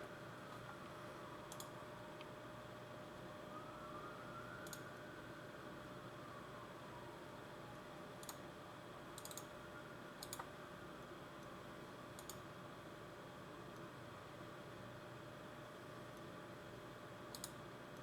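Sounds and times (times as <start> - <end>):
faint sharp computer clicks: 1.5 - 1.8, 4.6 - 4.8, 8.2 - 8.4, 9.2 - 9.5, 10.2 - 10.5, 12.2 - 12.4, 17.3 - 18.0.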